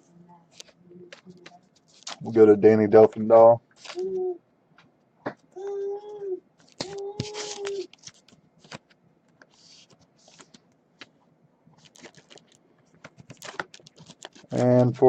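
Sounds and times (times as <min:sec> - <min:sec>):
soft rustles: 0:00.5 - 0:02.3, 0:06.6 - 0:11.2
typing on computer keyboard: 0:11.9 - 0:14.7.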